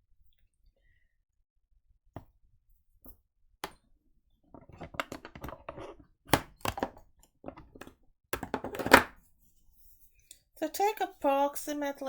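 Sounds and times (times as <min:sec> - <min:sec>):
small handling noises: 0:04.5 - 0:10.5.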